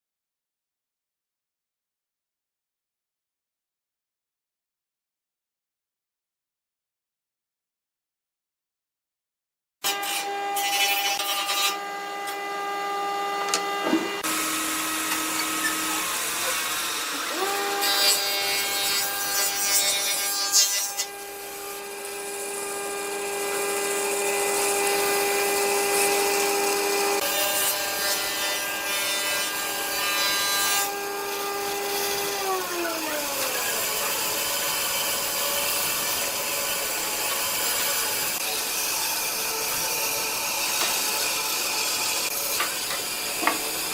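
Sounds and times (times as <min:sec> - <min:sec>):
wood lathe motor whine: 0:10.3 - 0:20.2, 0:20.9 - 0:43.9.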